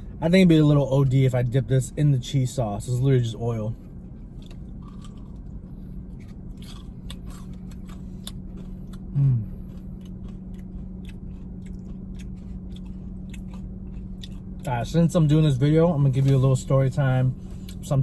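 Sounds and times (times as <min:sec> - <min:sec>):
steady low hum: 0:00.0 - 0:18.0
crunchy chewing: 0:04.2 - 0:14.7.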